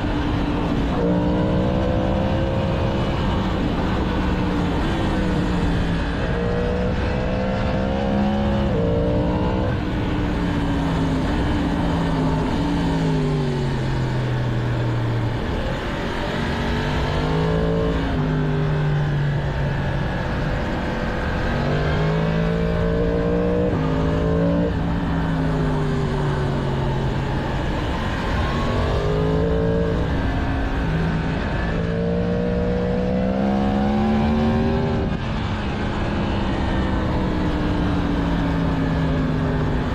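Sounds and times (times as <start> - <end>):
motorcycle engine revving through gears: 0.0 - 39.9.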